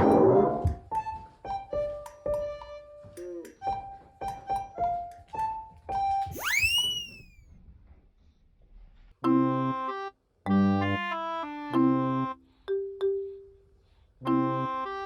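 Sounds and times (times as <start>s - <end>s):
whistle-like swooping glide: 6.3s - 7.5s
keyboard chords: 9.2s - 12.4s, 14.3s - 15.0s.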